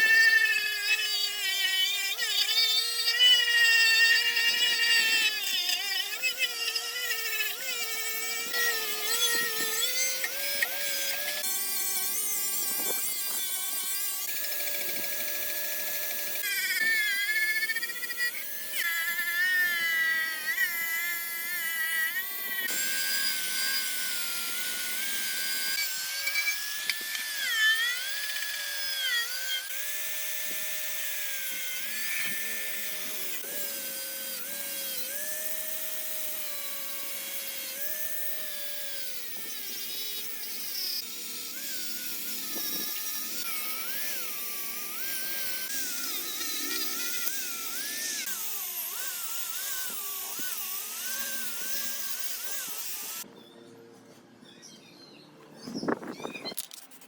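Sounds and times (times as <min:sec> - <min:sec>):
power tool whining: 0:00.0 - 0:57.0.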